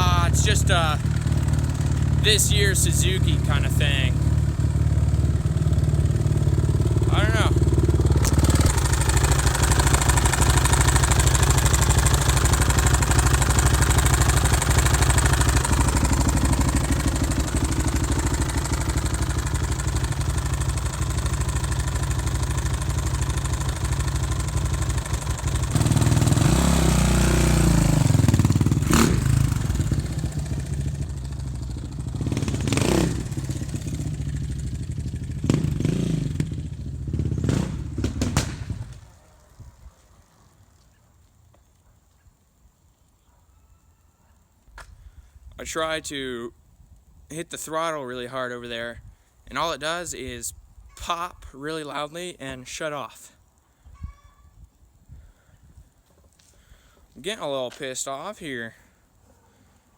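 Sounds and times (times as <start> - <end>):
engine knocking: 0.0 - 38.5
dirt bike engine revving: 0.0 - 39.0
engine pops: 5.4 - 21.5, 37.1 - 39.1.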